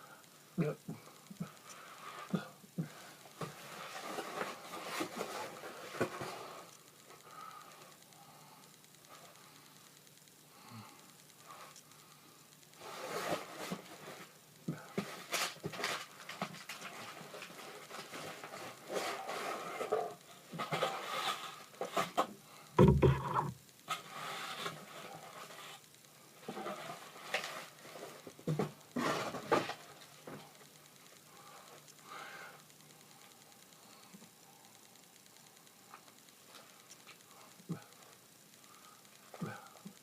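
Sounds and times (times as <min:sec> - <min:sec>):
heavy thump: 0:22.8 - 0:23.6.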